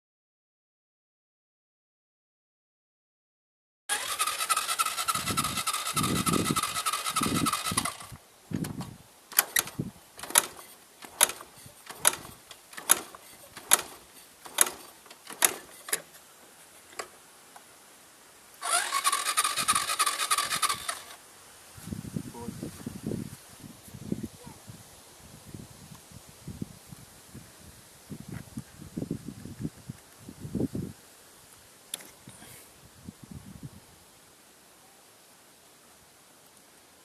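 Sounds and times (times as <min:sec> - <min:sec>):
sharp clicks: 0:03.9 - 0:16.2
starter motor cranking engine: 0:03.9 - 0:16.2, 0:16.8 - 0:17.2, 0:18.6 - 0:21.2.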